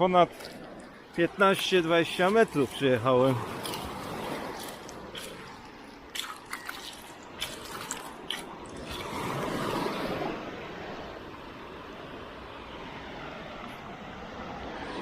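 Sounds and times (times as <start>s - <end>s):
wash of water: 0.0s - 10.6s
water splashing: 0.0s - 10.8s
water dripping: 0.4s - 9.1s.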